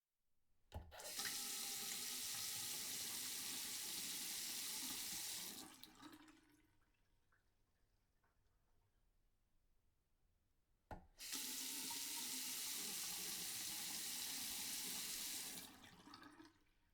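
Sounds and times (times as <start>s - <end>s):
tap water running into sink: 0.8s - 6.4s, 10.9s - 16.6s.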